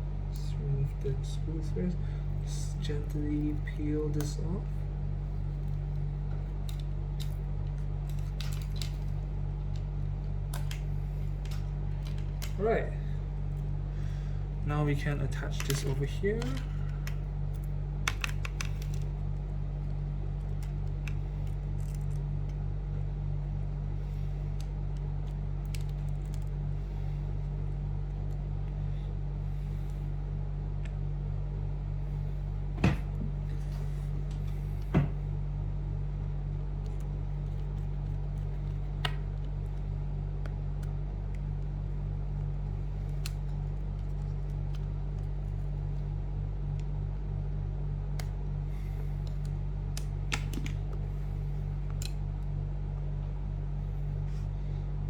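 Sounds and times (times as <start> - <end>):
low electrical hum: 0.0 - 55.0
clicks of handling small parts: 5.6 - 9.9, 15.5 - 19.1.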